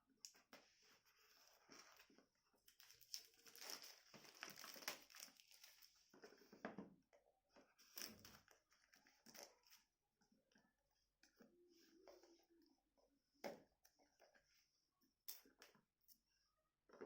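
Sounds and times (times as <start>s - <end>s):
smartphone packaging crinkling: 2.7s - 6.0s.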